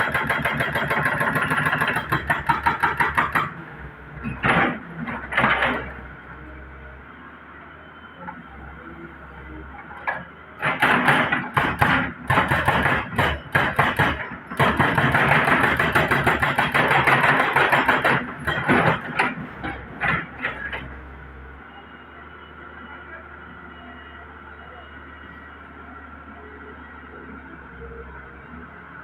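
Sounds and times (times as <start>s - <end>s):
excavator clattering and scraping: 0.0s - 6.3s, 9.6s - 21.4s
excavator engine running: 0.0s - 29.0s.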